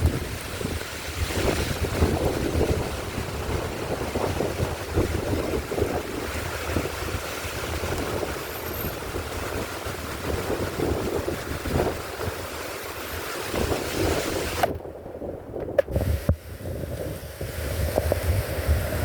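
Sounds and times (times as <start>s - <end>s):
heavy rain falling: 0.0s - 14.7s
wind buffeting microphone: 0.0s - 19.0s.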